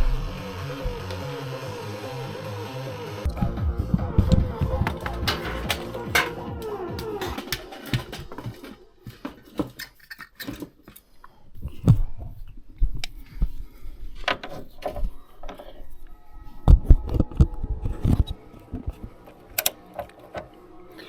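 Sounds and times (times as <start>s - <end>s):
hard objects clicking and knocking: 4.6s - 11.0s.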